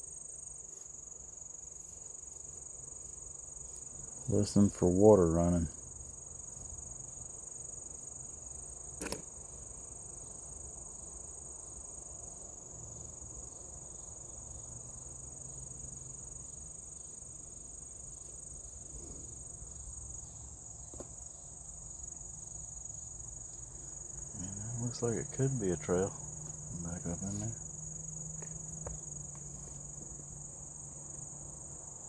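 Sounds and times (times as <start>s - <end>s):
insects chirring: 0.0s - 32.0s
sharp click: 9.0s - 9.3s.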